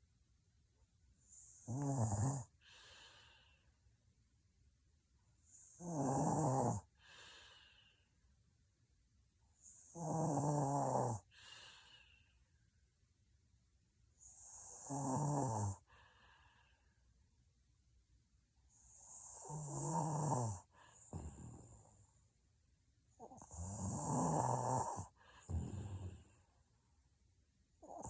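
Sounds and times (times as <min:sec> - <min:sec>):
woman snoring: 0:01.3 - 0:03.4, 0:05.5 - 0:07.8, 0:09.6 - 0:12.1, 0:14.2 - 0:15.9, 0:18.9 - 0:22.0, 0:23.2 - 0:26.4, 0:27.8 - 0:28.0
soft breath: 0:02.6 - 0:03.8, 0:06.9 - 0:08.3, 0:11.2 - 0:12.6, 0:15.8 - 0:17.2, 0:20.6 - 0:22.4, 0:25.0 - 0:27.1.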